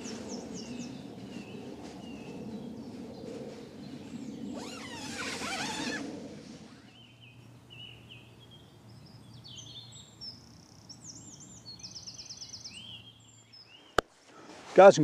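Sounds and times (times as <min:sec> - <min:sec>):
low rushing background: 0:00.0 - 0:07.5
wild birds singing: 0:00.0 - 0:14.2.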